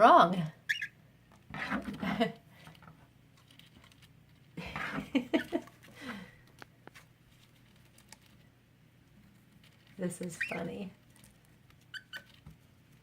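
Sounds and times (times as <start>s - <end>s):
woman laughing: 4.6s - 6.2s.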